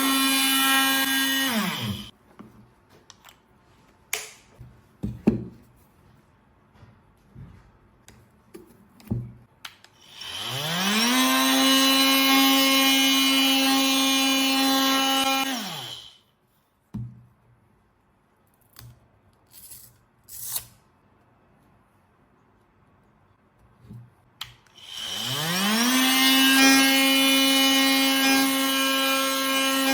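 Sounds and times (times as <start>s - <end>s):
oscillating multi-tool buzzing: 10.0s - 16.2s, 24.8s - 29.9s.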